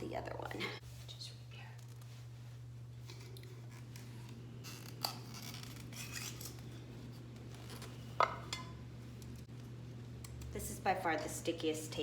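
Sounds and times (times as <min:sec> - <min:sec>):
steady low hum: 0:00.0 - 0:12.0
tape scraping and crinkling: 0:03.0 - 0:08.0.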